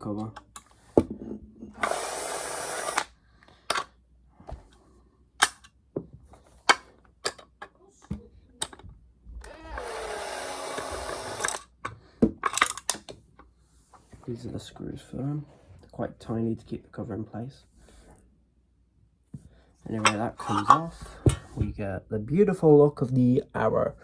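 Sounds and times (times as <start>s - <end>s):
cordless drill running: 1.8s - 3.1s, 9.4s - 11.7s
screws and cover clicking: 9.4s - 11.8s.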